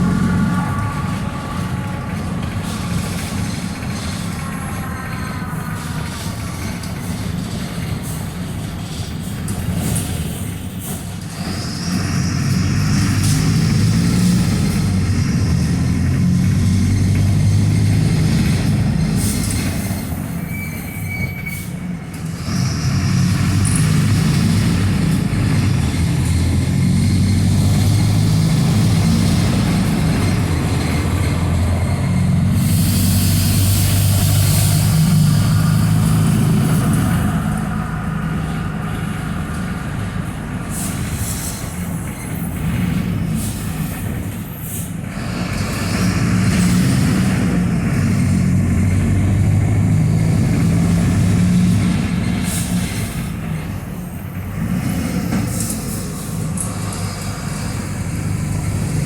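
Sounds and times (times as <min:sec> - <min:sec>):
bus diesel engine droning: 0:00.0 - 0:59.0
squeaks and rattles of bus: 0:00.0 - 0:59.0
air hiss: 0:32.5 - 0:35.9.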